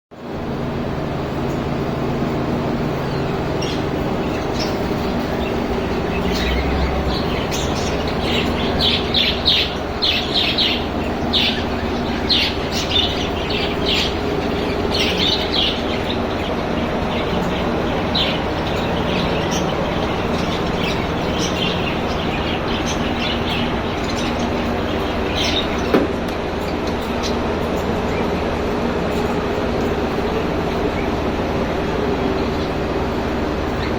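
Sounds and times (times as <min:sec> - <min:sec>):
steady low hum: 0:00.1 - 0:33.9
caged birds chirping: 0:00.2 - 0:33.9.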